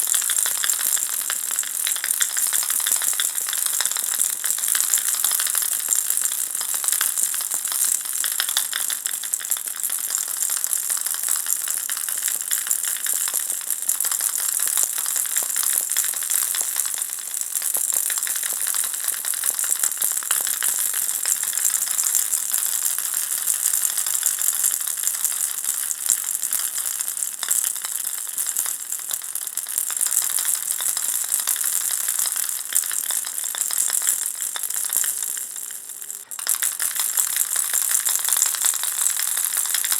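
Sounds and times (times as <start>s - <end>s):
baby rattle shaken: 0.1s - 5.6s, 33.4s - 39.9s.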